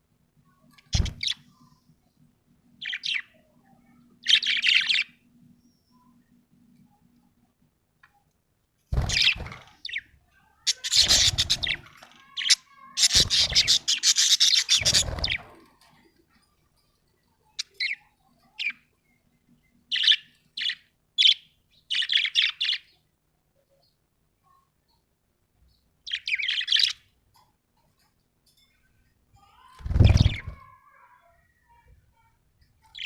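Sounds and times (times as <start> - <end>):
budgerigar chirping: 13.0 - 15.4.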